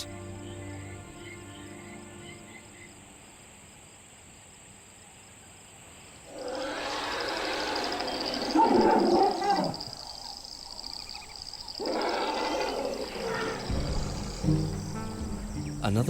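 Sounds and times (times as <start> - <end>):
crickets chirping: 0.0 - 16.0
wild animal rough call: 6.2 - 10.4, 11.7 - 14.5.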